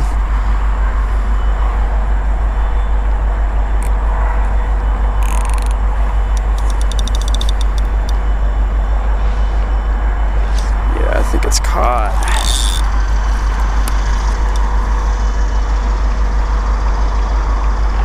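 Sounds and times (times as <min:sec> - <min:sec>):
steady low rumble: 0:00.0 - 0:18.0
fishing reel clicking: 0:05.2 - 0:05.8, 0:06.4 - 0:08.2, 0:12.2 - 0:14.7.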